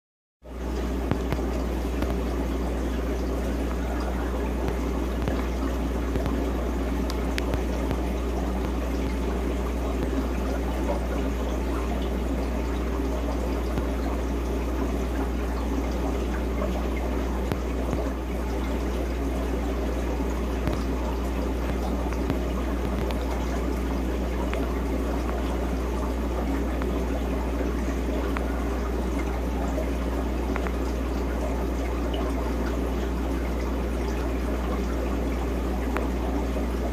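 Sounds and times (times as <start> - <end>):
low hum: 0.5 - 31.7
water trickling: 0.5 - 36.9
faint ticks: 6.2 - 9.2, 21.7 - 23.2.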